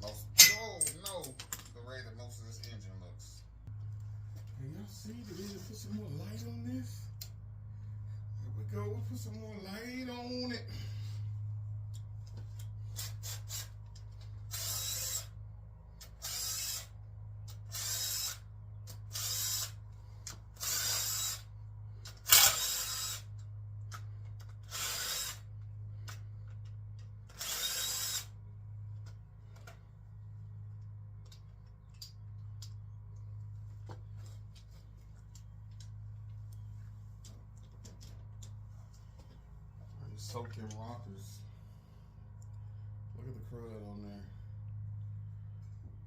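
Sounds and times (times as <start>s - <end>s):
steady low hum: 0.0s - 46.0s
sharp metallic clank: 0.3s - 1.6s
ratchet wrench clicking: 17.5s - 24.0s.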